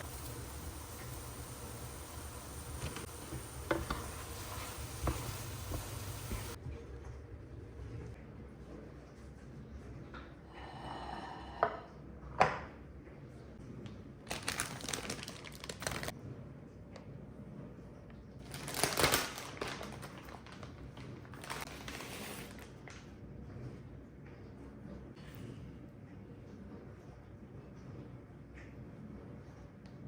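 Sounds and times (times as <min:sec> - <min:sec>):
rustling or crinkling: 0:13.7 - 0:16.1, 0:18.4 - 0:23.2.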